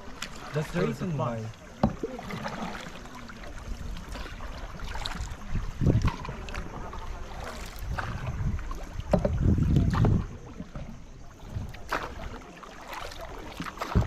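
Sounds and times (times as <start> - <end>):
water sounds from moving kayak: 0.0 - 14.0
wind rumbling on microphone: 3.3 - 12.4
splash or knock: 11.6 - 14.0.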